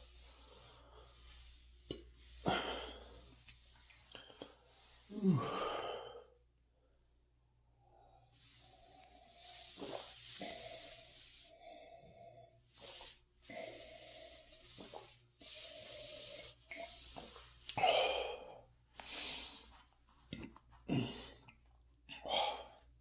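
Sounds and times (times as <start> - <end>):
man breathing heavily: 4.1 - 6.4, 7.9 - 19.8.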